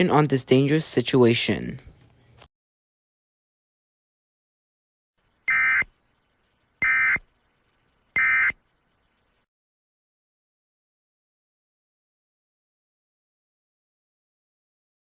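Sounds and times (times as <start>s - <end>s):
digital data tone bursts: 5.5s - 5.9s, 6.8s - 9.3s.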